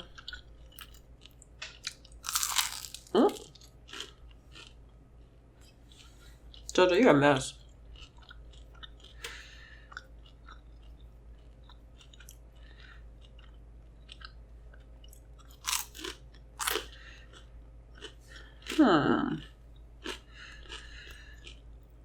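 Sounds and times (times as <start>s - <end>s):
close chewing with mouth clicks: 0.0s - 4.8s, 7.9s - 18.8s, 19.7s - 21.7s
crunching bites: 0.0s - 4.8s, 15.1s - 18.8s.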